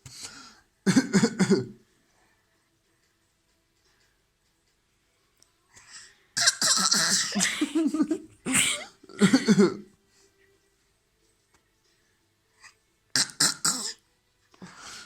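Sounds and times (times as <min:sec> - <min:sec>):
child coughing hoarsely: 0:06.4 - 0:07.7, 0:08.5 - 0:09.8, 0:13.2 - 0:14.0.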